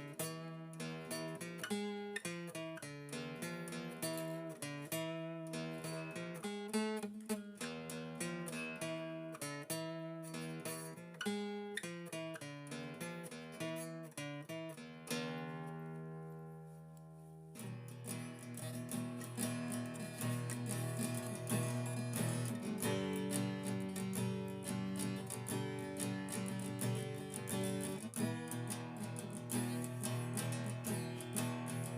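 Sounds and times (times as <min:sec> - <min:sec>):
acoustic guitar playing: 0:00.0 - 0:31.9.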